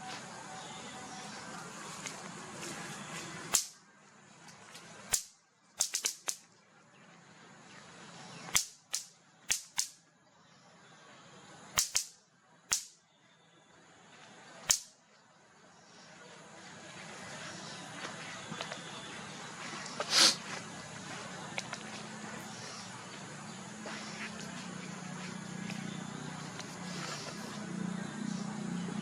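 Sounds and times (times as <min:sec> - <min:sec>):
sharp clicks or snaps: 0:03.5 - 0:03.8, 0:05.1 - 0:06.4, 0:08.5 - 0:10.0, 0:11.8 - 0:13.0, 0:14.6 - 0:15.0.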